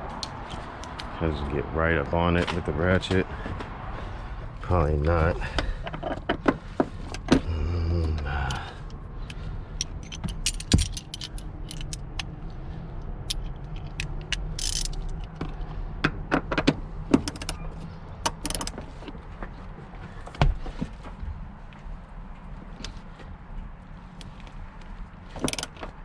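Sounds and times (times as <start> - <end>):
ratchet metallic clicks: 13.1 - 15.4, 18.2 - 18.8.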